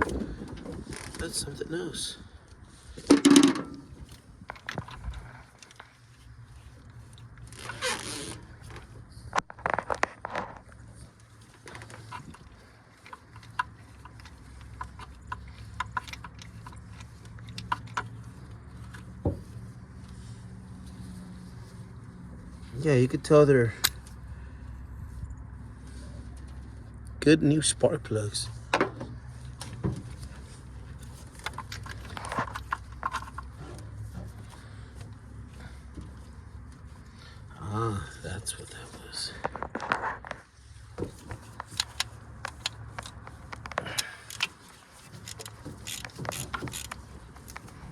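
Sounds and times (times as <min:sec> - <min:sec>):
metallic clicks of hand tools: 0:41.3 - 0:47.8.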